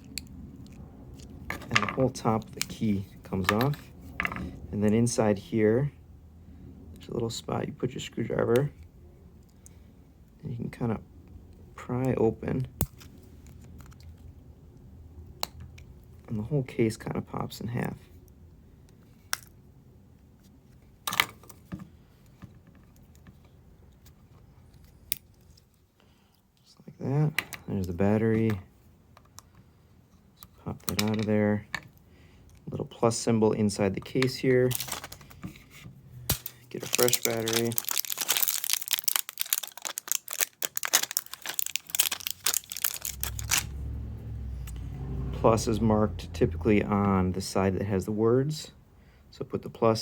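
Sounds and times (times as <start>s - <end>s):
plastic packaging crinkling and tearing: 34.6s - 35.4s, 36.3s - 43.7s
low rumble: 41.4s - 47.9s.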